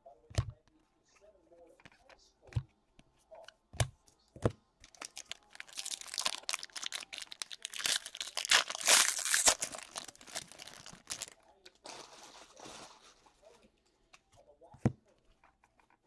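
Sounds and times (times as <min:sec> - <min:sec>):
foil wrapper tearing and crinkling: 0:04.9 - 0:13.1.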